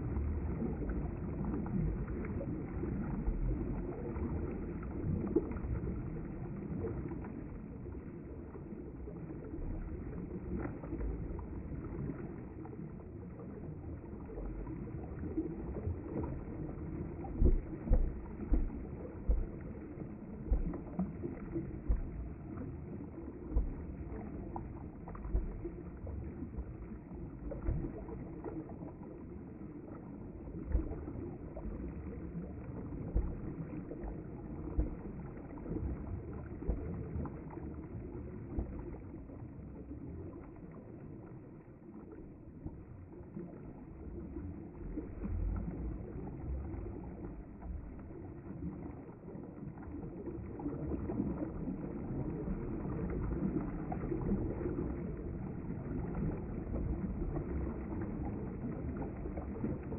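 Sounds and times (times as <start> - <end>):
thumps and splashes: 17.3 - 19.8, 20.4 - 21.0, 21.8 - 22.3.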